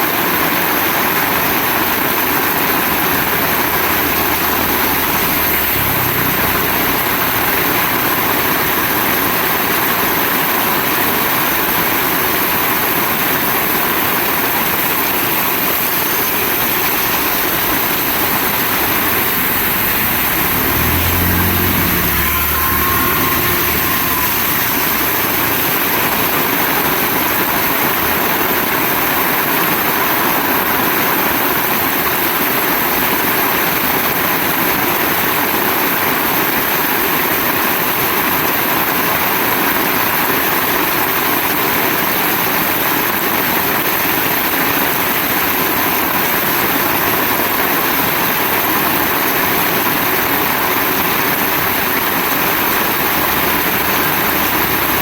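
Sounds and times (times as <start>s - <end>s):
heavy rain falling: 16.0s - 28.6s
low rumble: 17.4s - 26.4s.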